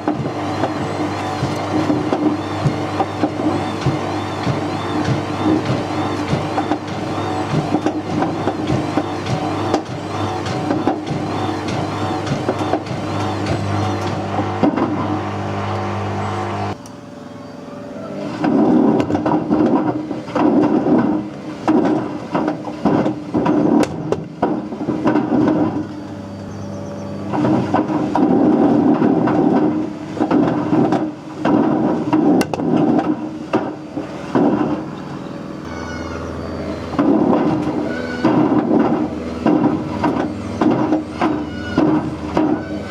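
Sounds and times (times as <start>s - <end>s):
washing machine motor hum: 0.0s - 42.9s.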